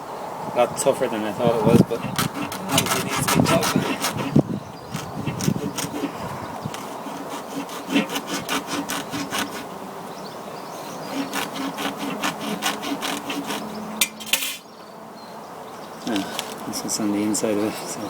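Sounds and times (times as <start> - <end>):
hand saw rasping through ball: 1.6 - 9.7, 11.0 - 14.6.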